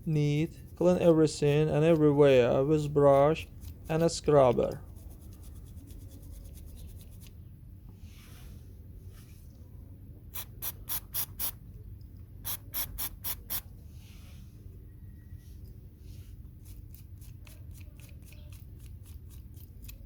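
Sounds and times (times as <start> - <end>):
stiff brush scrubbing metal: 0.0 - 7.3.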